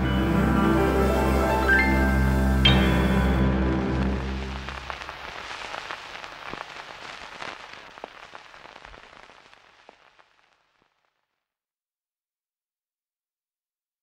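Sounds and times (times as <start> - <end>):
crackling hiss with clicks: 0.0 - 11.5.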